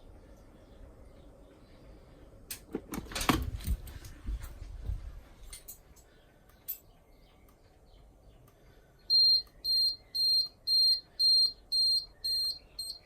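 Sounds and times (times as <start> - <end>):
fire alarm beeping: 9.1 - 13.0.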